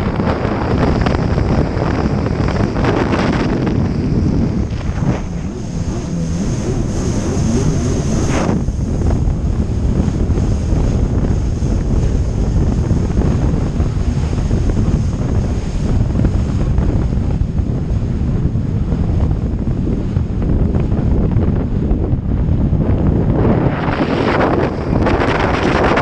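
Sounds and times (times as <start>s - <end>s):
jet ski engine running: 0.0s - 26.0s
wind buffeting microphone: 0.0s - 26.0s
water rushing: 1.0s - 16.8s.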